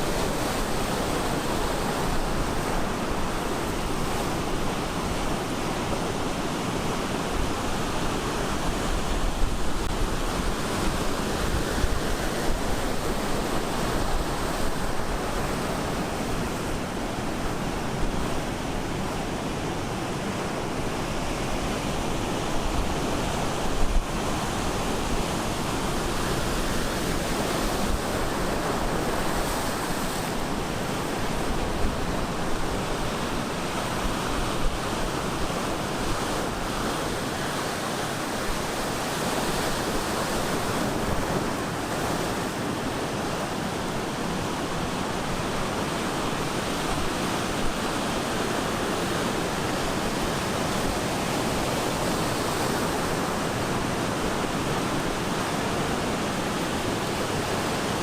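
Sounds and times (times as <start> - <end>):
waves crashing on beach: 0.0 - 58.0.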